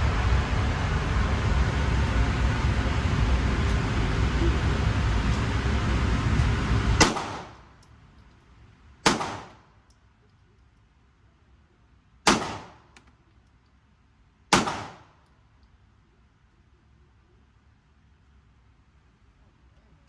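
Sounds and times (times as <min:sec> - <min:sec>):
pistol shots with echo: 0:07.0 - 0:07.8, 0:09.0 - 0:09.7, 0:12.3 - 0:13.0, 0:14.5 - 0:15.2.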